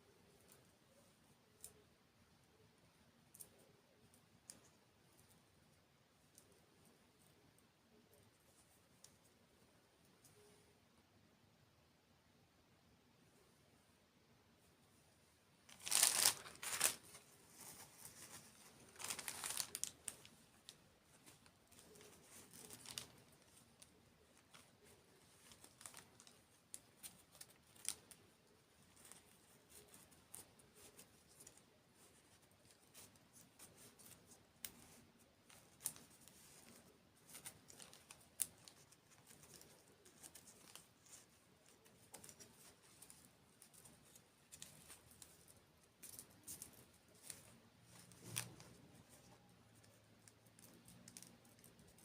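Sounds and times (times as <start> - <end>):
food packaging crinkling: 15.7 - 20.3, 21.4 - 23.6, 24.4 - 28.2.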